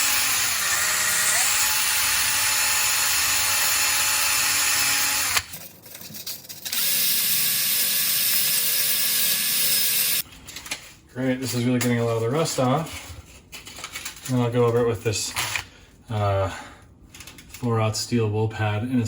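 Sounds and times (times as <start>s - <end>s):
power drill motor whine: 0.0s - 5.5s, 6.8s - 10.2s.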